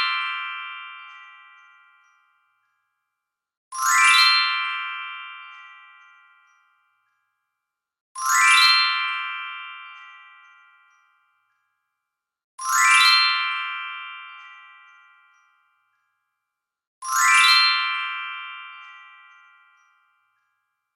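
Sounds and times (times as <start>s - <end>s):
sparkle of bell-like chimes: 0.0s - 20.9s.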